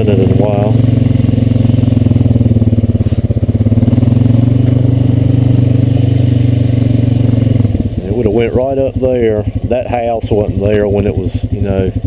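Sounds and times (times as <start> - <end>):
atv engine running at low speed: 0.0 - 12.0.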